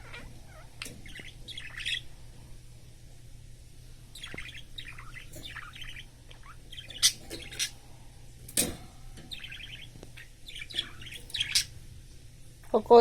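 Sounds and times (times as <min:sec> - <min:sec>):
budgerigar chirping and squawking: 0:00.0 - 0:02.2, 0:04.2 - 0:07.9, 0:09.3 - 0:11.8.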